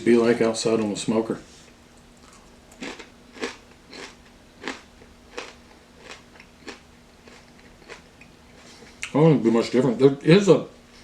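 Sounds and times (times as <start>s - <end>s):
person chewing food: 2.2s - 9.1s.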